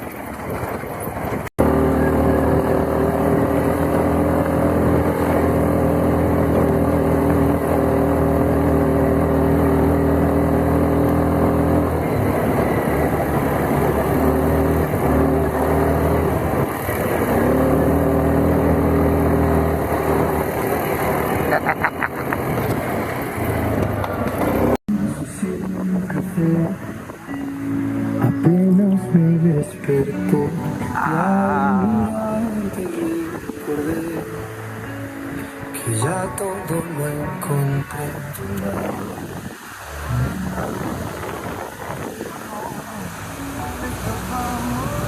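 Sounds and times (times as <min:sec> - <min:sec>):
quad bike engine running: 0:00.0 - 0:26.5, 0:38.4 - 0:45.0.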